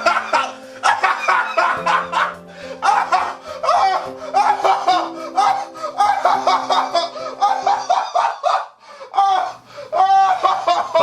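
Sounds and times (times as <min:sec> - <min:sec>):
background music with held notes: 0:00.0 - 0:11.0
man laughing hard: 0:00.0 - 0:11.0.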